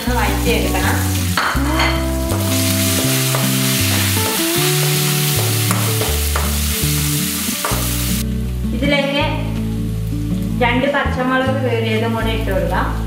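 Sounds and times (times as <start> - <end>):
garlic sizzling in oil: 0.0 - 8.2.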